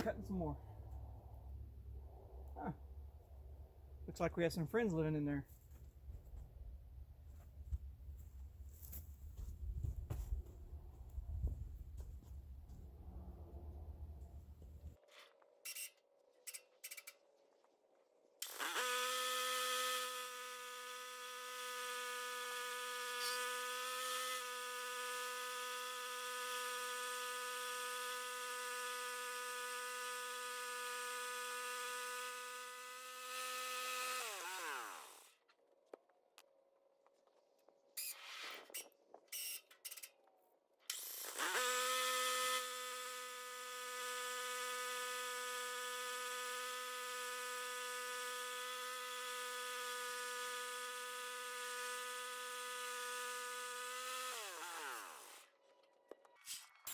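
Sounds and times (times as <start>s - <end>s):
sawmill motor buzzing whine: 18.4s - 35.4s, 40.9s - 55.6s.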